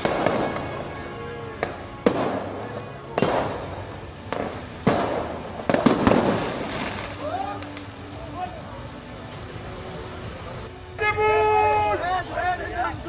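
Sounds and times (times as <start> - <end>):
sharp echoing bangs: 0.0 - 8.0.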